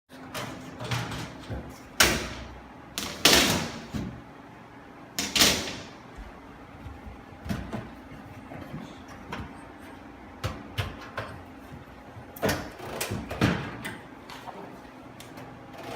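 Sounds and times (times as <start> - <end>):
sharp knocks and clattering bangs: 0.3 - 4.2.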